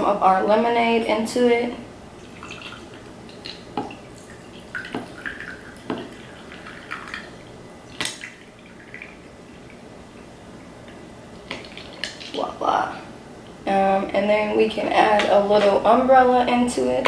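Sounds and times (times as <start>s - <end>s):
liquid trickling into cup: 2.2s - 10.7s.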